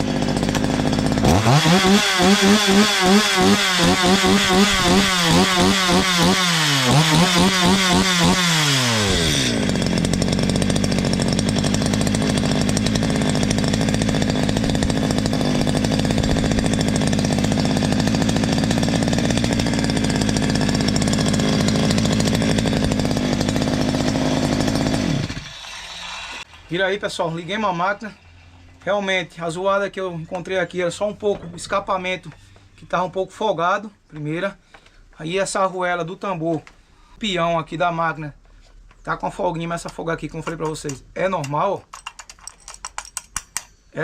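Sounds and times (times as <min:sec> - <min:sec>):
chainsaw engine revving and idling: 0:00.0 - 0:26.8.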